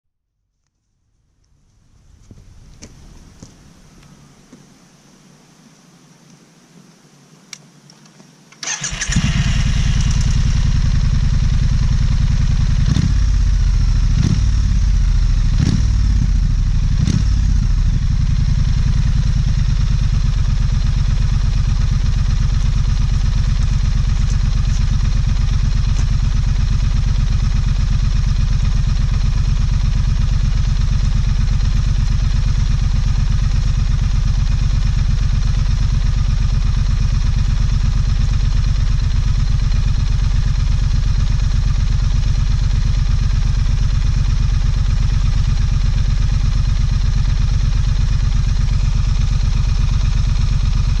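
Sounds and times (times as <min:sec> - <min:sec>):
motorcycle engine idling: 0:08.6 - 0:51.0
motorcycle engine starting and revving: 0:08.6 - 0:51.0.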